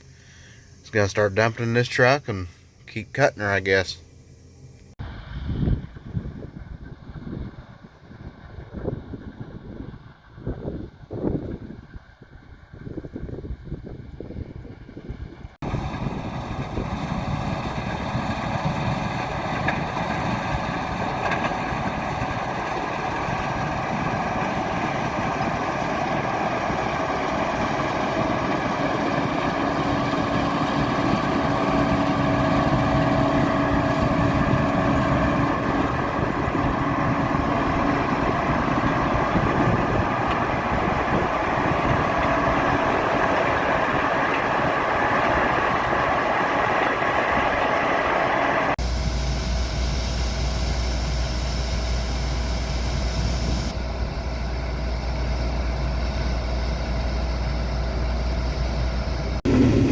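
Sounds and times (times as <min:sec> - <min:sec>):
faint steady hum: 0:00.0 - 0:05.8
heavy diesel machinery running: 0:05.0 - 0:59.9.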